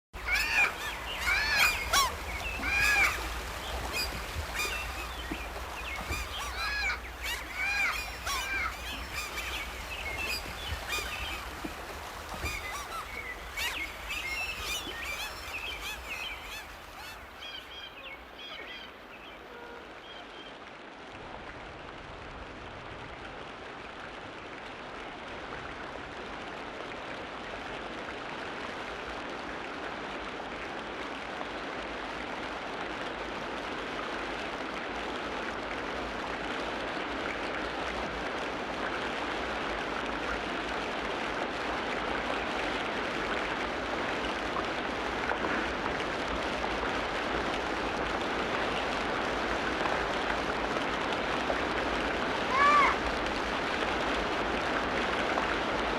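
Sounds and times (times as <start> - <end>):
birds calling: 0.2 - 20.3.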